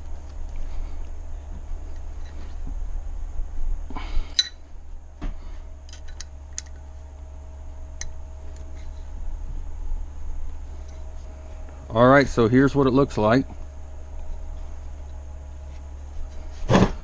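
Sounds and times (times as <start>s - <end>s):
steady low hum: 0.0s - 17.0s
metal tools clicking and clinking: 4.3s - 4.6s.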